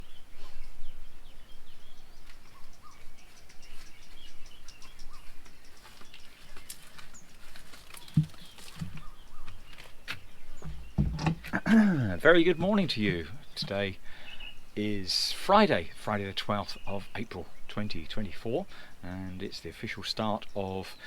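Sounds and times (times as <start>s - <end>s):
small birds chirping: 0.0s - 21.0s
low thumps: 10.6s - 14.0s.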